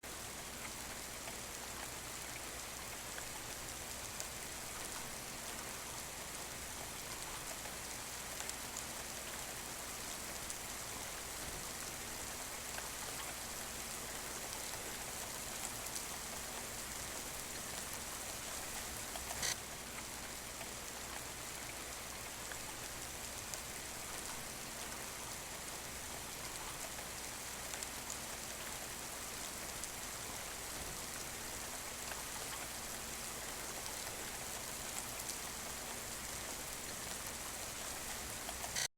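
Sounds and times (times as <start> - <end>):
steady rain: 0.0 - 38.9.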